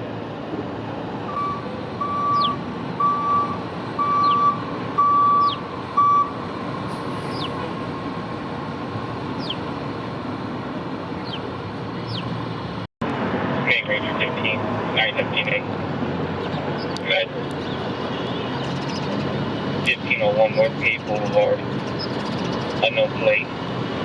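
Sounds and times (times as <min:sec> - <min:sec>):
street and traffic noise: 0:00.0 - 0:24.0
reversing alarm beeping: 0:01.3 - 0:06.4.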